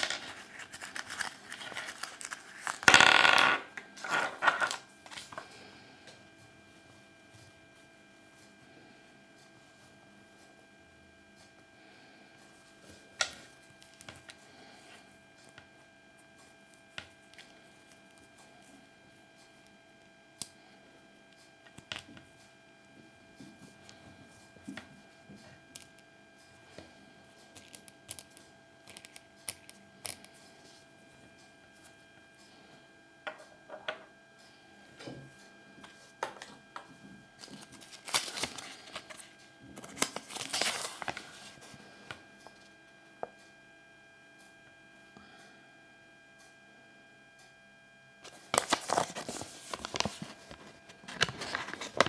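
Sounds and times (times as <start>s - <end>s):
crinkling: 0.0s - 3.0s, 37.4s - 41.8s, 48.3s - 52.0s
electrical hum: 0.0s - 52.0s.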